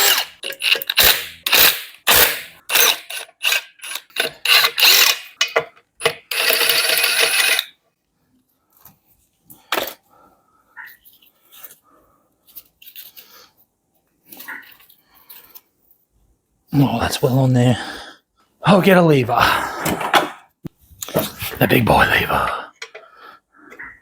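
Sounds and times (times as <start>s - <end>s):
power tool undoing bolts: 0.0s - 7.7s.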